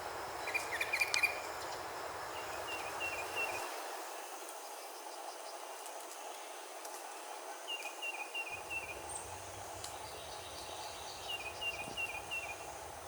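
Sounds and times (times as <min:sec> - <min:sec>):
insects hissing: 0:00.0 - 0:05.3, 0:08.4 - 0:13.0
songbird chirping: 0:00.4 - 0:03.8, 0:07.7 - 0:13.0.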